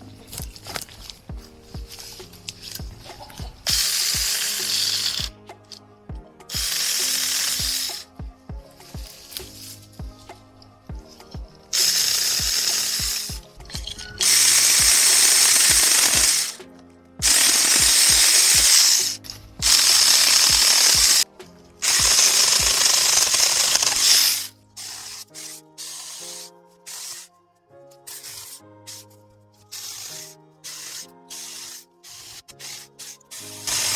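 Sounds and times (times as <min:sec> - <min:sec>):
background music with beat: 0:00.0 - 0:33.9
electric chainsaw cutting branches: 0:02.0 - 0:05.4, 0:06.5 - 0:08.2, 0:11.7 - 0:16.6, 0:17.2 - 0:25.3, 0:31.6 - 0:33.9.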